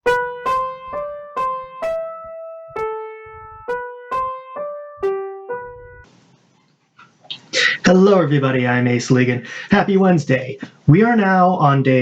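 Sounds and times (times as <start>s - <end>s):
keyboard melody: 0.0s - 6.1s.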